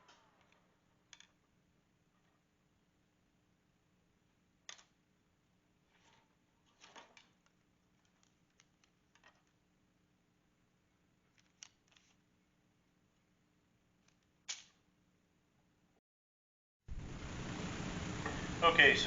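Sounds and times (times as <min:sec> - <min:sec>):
faint steady hum: 0:00.0 - 0:16.0, 0:16.9 - 0:19.0
faint clicks and knocks: 0:05.9 - 0:09.7, 0:11.2 - 0:12.3.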